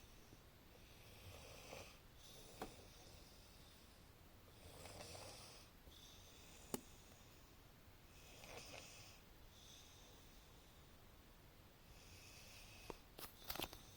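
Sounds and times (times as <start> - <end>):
faint snoring: 0.0 - 3.9, 4.5 - 7.4, 8.1 - 10.8.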